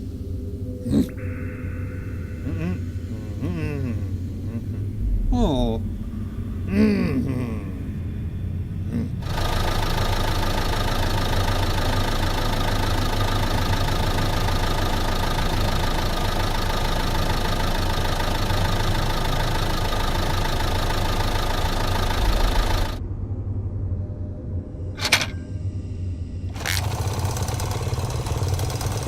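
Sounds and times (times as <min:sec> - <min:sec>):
heavy machine engine running: 0:00.0 - 0:23.0, 0:26.5 - 0:29.0.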